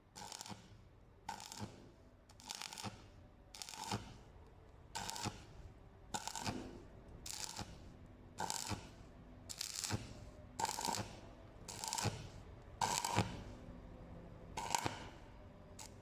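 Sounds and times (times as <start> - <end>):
welding arc crackling hiss: 0.2 - 4.2, 5.0 - 5.6, 6.2 - 7.8, 8.4 - 13.6, 14.6 - 15.2, 15.8 - 16.0.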